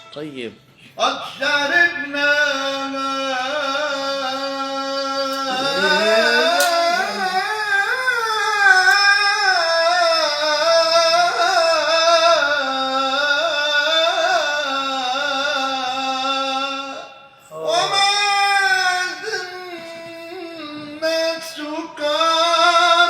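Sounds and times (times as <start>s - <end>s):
person singing melismatic melody: 5.3s - 7.8s.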